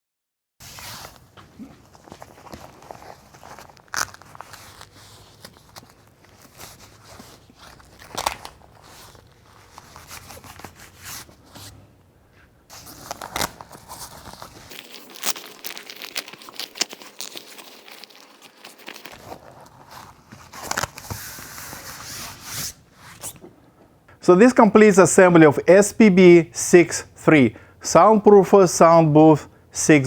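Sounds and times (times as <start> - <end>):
fabric panels rustling and crinkling: 0.6 - 23.6.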